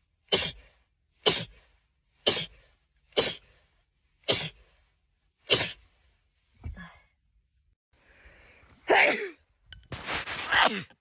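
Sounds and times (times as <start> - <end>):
person sneezing: 0.3 - 1.6, 2.2 - 3.6, 4.2 - 4.7, 5.4 - 5.9, 8.9 - 9.4, 10.4 - 11.0.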